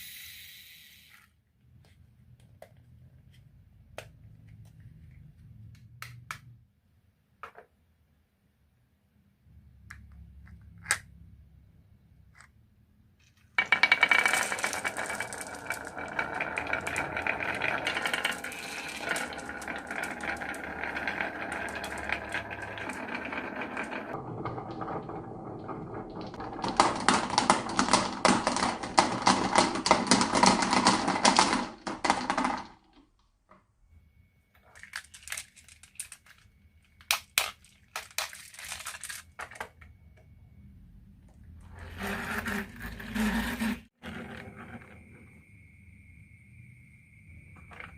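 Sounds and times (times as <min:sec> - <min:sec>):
marbles rolling down wooden run: 0:13.5 - 0:32.9, 0:34.6 - 0:36.4.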